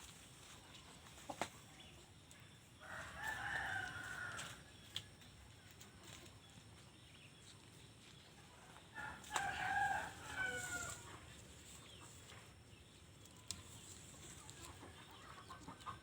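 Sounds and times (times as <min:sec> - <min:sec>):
rooster crowing: 0:02.8 - 0:04.6, 0:09.0 - 0:11.0.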